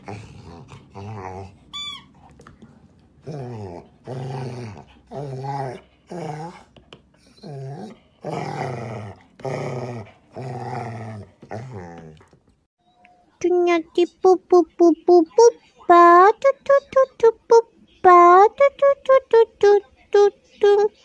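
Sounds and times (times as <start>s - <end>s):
dog growling: 0.0s - 1.7s, 3.2s - 6.7s, 7.4s - 12.4s.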